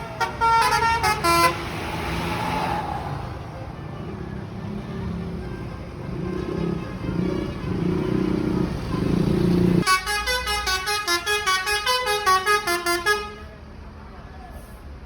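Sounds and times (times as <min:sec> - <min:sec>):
bus horn playing melody: 0:00.0 - 0:01.8, 0:09.6 - 0:13.6
bus droning: 0:00.0 - 0:15.0.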